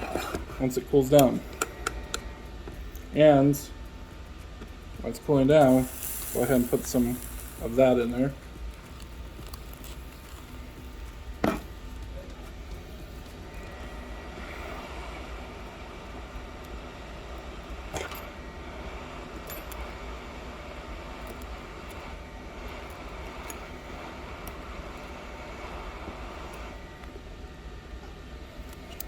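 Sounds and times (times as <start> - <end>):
blower whirring: 5.4 - 27.6.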